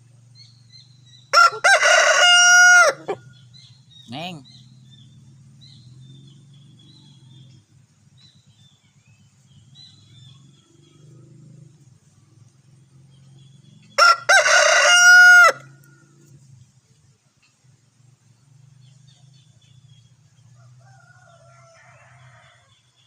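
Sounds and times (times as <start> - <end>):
rooster crowing: 1.3 - 3.4, 13.9 - 16.1, 20.4 - 22.9
faint high chirping calls: 3.0 - 14.0.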